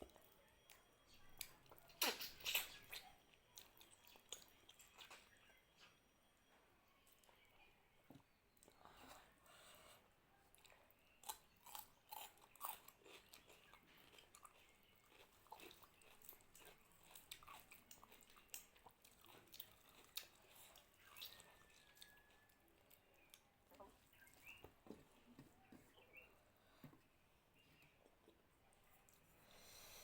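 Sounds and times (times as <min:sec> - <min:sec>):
person chewing food: 0:01.4 - 0:05.9, 0:10.5 - 0:25.1.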